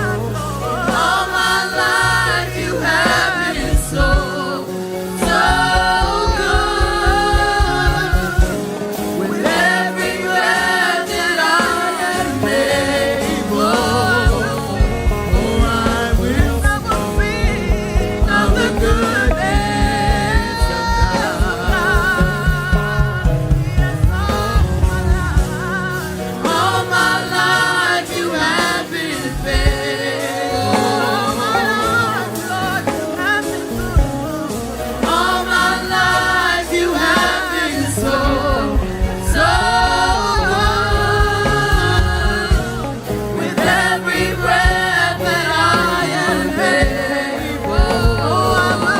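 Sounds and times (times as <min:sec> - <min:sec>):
band playing a steady beat: 0:00.0 - 0:48.9
drums: 0:00.0 - 0:48.9
worship singers: 0:00.0 - 0:48.9.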